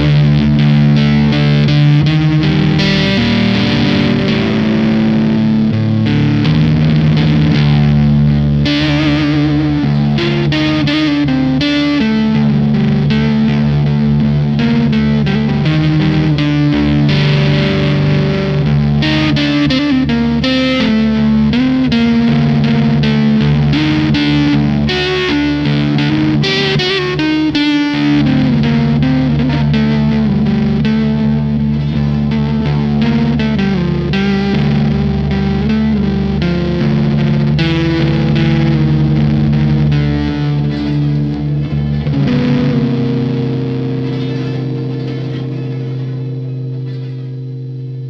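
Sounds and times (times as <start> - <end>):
distorted electric guitar melody: 0.0 - 48.0.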